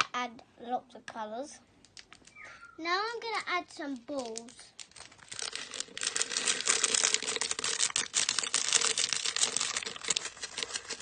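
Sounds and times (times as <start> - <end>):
plastic packet crinkling: 3.2 - 11.0.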